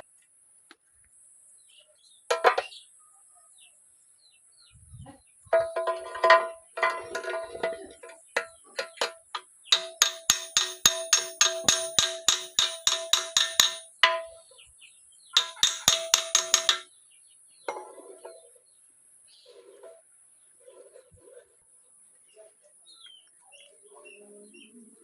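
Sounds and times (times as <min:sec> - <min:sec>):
hammer blows on metal: 0:08.4 - 0:14.5, 0:15.4 - 0:16.9.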